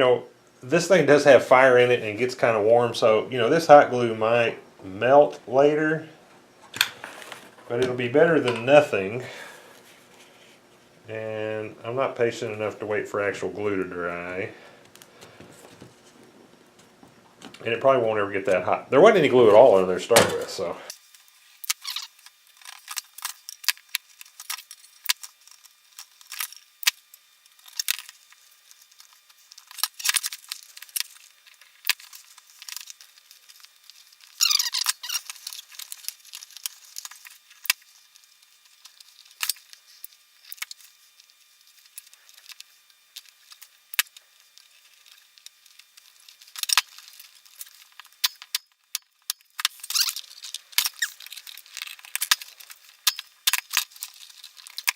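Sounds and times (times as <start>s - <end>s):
falling squeak: 34.4s - 35.3s.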